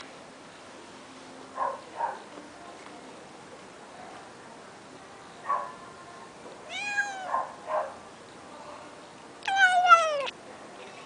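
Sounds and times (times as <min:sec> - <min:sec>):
cat meowing: 0:06.7 - 0:07.5, 0:09.4 - 0:10.3.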